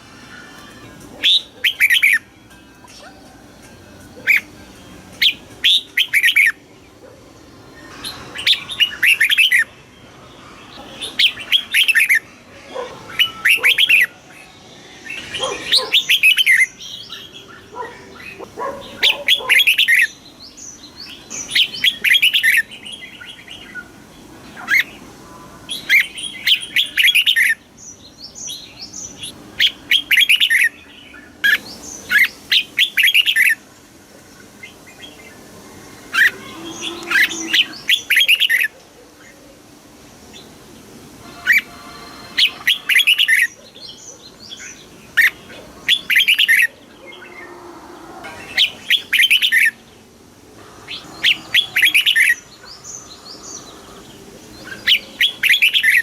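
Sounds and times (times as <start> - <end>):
bird singing warbling phrases: 0.0 - 3.3, 4.1 - 33.7, 34.4 - 39.7, 41.2 - 56.0.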